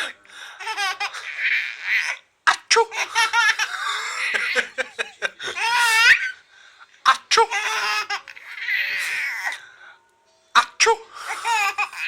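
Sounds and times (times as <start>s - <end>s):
baby laughing: 0.6s - 2.2s, 2.8s - 6.4s, 7.4s - 9.6s, 11.4s - 12.0s.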